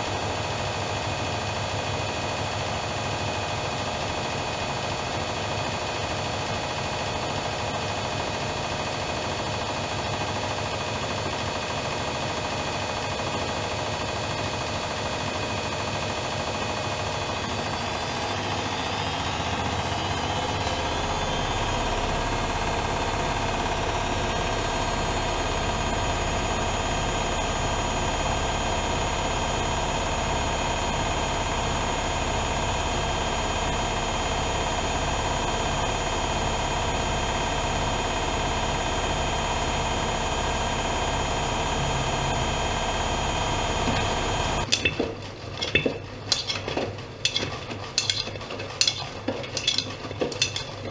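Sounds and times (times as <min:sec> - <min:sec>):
washing machine motor whine: 0:00.0 - 0:50.9
sharp clicks and clatters: 0:44.6 - 0:50.9.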